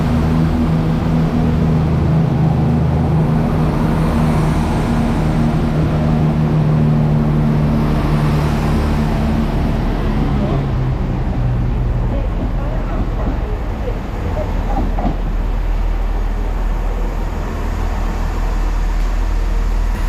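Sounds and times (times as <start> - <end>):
diesel train engine humming: 0.0 - 20.0.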